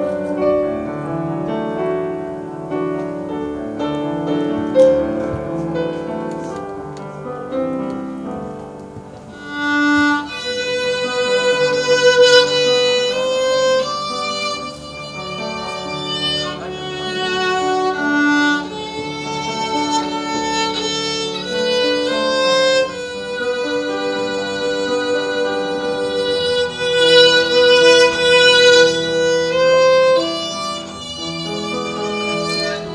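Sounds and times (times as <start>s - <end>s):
soft accompaniment: 0.0s - 32.9s
violin playing slow melody: 0.0s - 32.9s.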